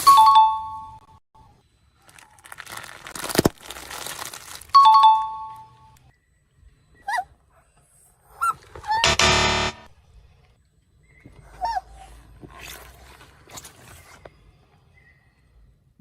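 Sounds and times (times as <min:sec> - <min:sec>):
brittle object crushed crunching: 0:02.1 - 0:04.8
buzzy horn-like blast: 0:09.0 - 0:09.9.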